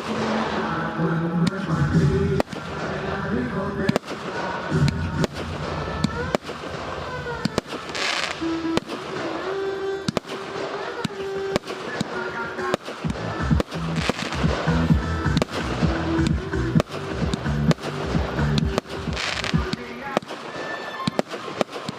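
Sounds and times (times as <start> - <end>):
fireworks bangs: 0.0 - 21.9
music with heavy bass beat: 13.1 - 19.8.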